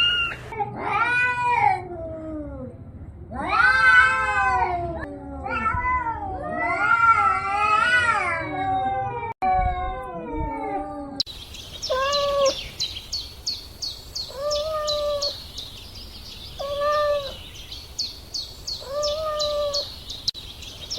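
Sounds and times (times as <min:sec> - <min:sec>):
kitten meowing: 0:11.9 - 0:12.6, 0:14.3 - 0:15.4, 0:16.6 - 0:17.4, 0:18.8 - 0:19.9.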